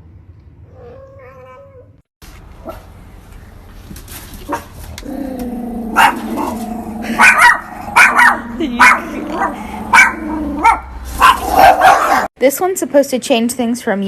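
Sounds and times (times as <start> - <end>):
dog barking loudly: 5.9 - 12.3.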